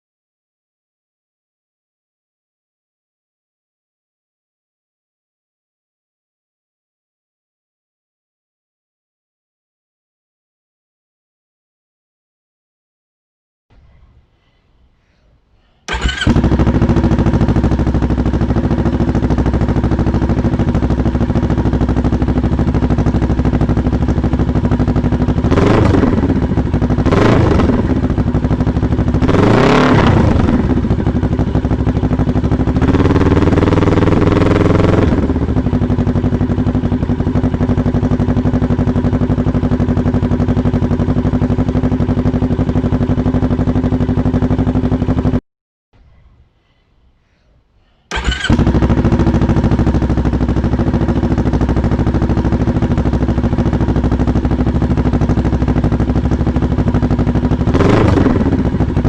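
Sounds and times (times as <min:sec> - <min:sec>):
motorcycle engine idling and revving: 0:15.9 - 0:45.4, 0:48.1 - 0:59.0.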